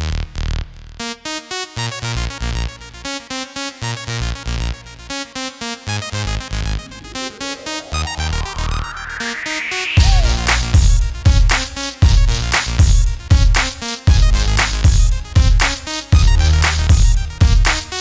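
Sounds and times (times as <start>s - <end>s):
electronic dance music: 4.6s - 18.0s
rising synth sweep: 5.9s - 13.2s.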